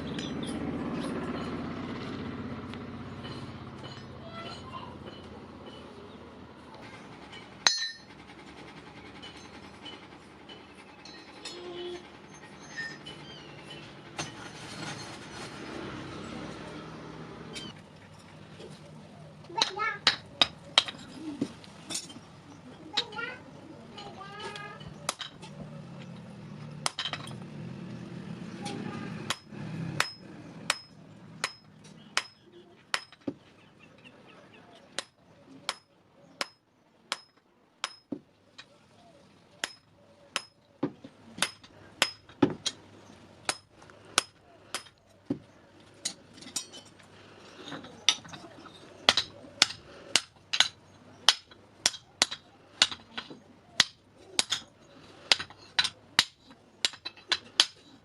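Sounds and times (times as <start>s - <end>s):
hammer striking steel on anvil: 7.6s - 8.1s, 29.3s - 33.2s, 35.0s - 38.1s, 41.4s - 42.8s.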